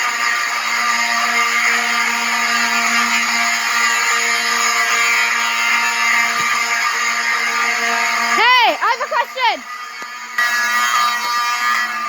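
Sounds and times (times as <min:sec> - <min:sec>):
fire alarm horns blaring: 0:00.0 - 0:12.0.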